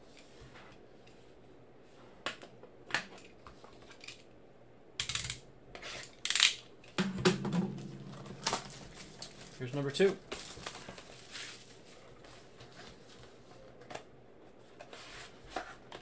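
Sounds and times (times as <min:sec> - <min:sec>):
cardboard and wrapper rustling: 0:08.5 - 0:13.5.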